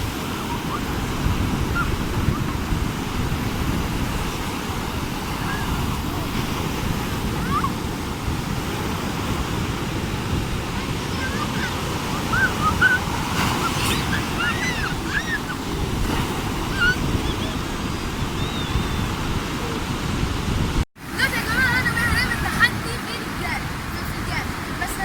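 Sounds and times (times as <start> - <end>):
sea surf washing: 0.0 - 25.0
wind on microphone: 0.0 - 25.0
short high calls: 11.2 - 15.6.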